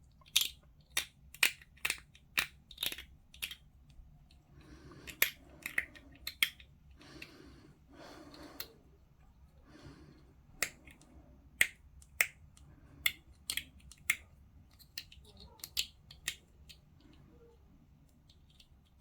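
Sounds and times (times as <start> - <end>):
plastic parts snipping clicks: 0.2 - 3.6, 11.6 - 16.8.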